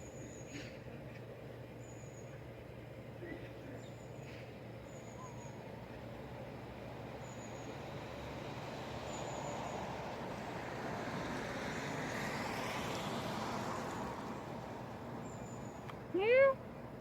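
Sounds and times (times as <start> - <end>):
road vehicle passing by: 5.0 - 16.5.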